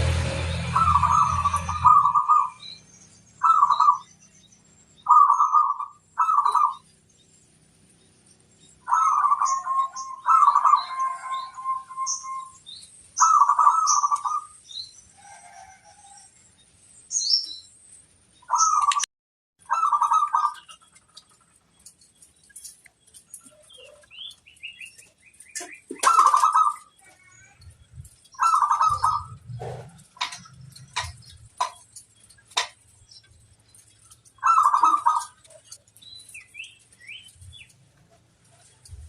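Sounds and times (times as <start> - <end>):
doves cooing: 0.0 - 2.8, 3.4 - 4.1, 5.1 - 6.9, 8.8 - 12.6, 13.2 - 14.5, 19.7 - 21.5, 25.5 - 32.7, 33.3 - 37.7
small birds chirping: 0.0 - 39.0.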